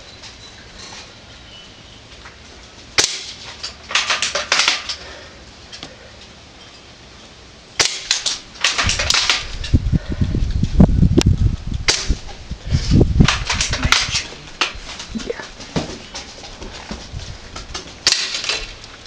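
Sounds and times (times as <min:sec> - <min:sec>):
low rumbling noise: 0:04.9 - 0:19.0
airsoft rifle shot snap: 0:07.8 - 0:09.5, 0:11.9 - 0:12.2.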